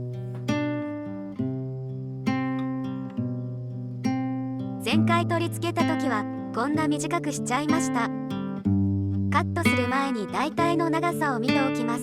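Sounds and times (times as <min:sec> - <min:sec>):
acoustic guitar chords ringing: 0:00.0 - 0:12.0.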